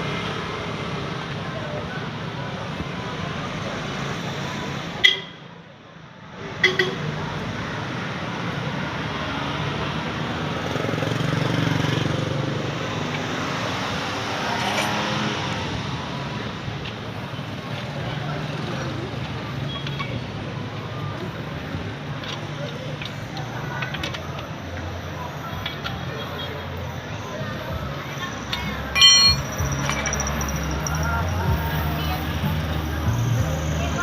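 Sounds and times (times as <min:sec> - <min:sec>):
street traffic noise: 0:00.0 - 0:34.0
sharp metallic clinks: 0:28.5 - 0:31.4.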